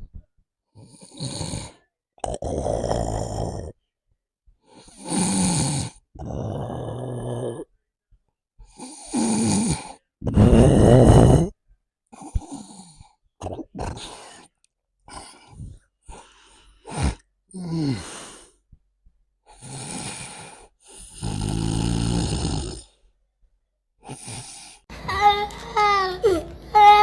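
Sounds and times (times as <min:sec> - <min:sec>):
man snoring: 0:00.8 - 0:03.8, 0:04.8 - 0:07.7, 0:08.7 - 0:11.6, 0:16.9 - 0:18.4, 0:19.6 - 0:23.0.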